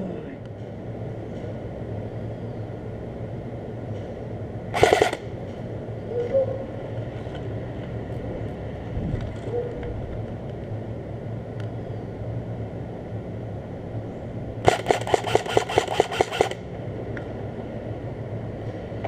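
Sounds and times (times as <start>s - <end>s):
airsoft gun firing burst: 4.8s - 5.3s, 14.6s - 16.6s.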